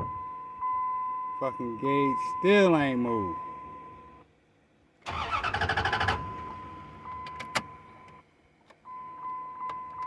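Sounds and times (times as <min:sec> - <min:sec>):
engine cranking without starting: 0:05.1 - 0:06.5.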